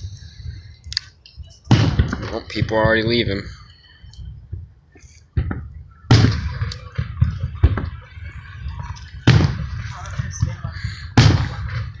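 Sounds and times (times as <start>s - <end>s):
firework bangs and crackles: 1.6s - 3.6s, 5.3s - 12.0s
firework booms with rumbling echo: 1.7s - 3.5s, 5.4s - 12.0s.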